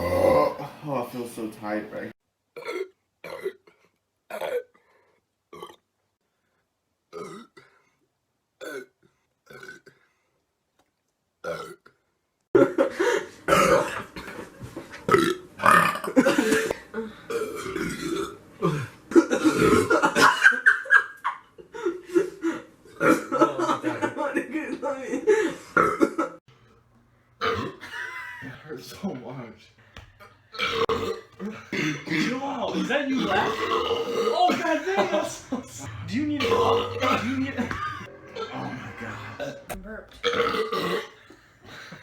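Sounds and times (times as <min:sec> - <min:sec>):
man burping: 0:00.0 - 0:00.8, 0:02.6 - 0:04.8, 0:05.5 - 0:05.9, 0:07.1 - 0:07.8, 0:08.6 - 0:10.0, 0:11.4 - 0:12.0, 0:13.5 - 0:14.4, 0:15.1 - 0:20.2, 0:27.4 - 0:28.4, 0:30.5 - 0:42.0.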